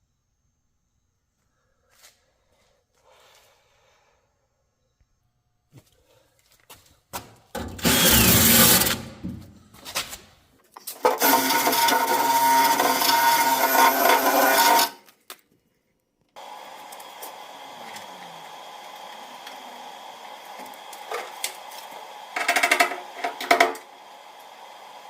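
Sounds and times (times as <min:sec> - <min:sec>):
power tool cutting steel: 0:07.6 - 0:09.2, 0:11.0 - 0:15.0, 0:16.4 - 0:25.0.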